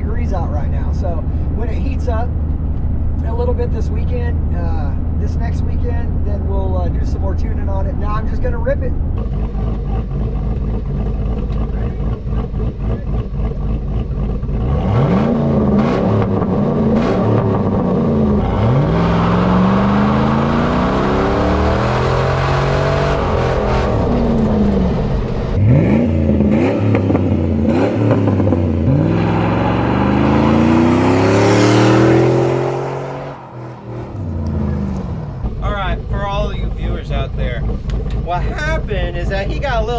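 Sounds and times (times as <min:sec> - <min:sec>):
engine revving: 0:06.2 - 0:39.8.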